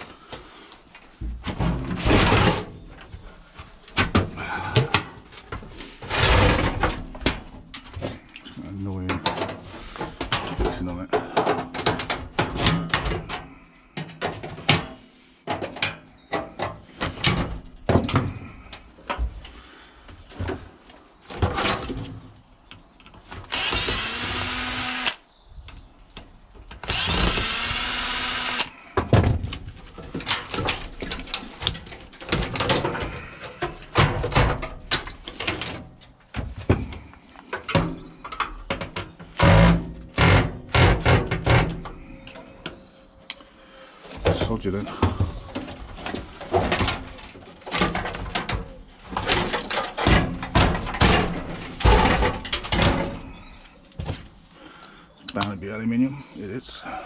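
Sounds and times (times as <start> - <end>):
hand tools knocking and clanking: 9.0 - 19.4
power drill whining: 23.5 - 25.2, 26.8 - 28.8.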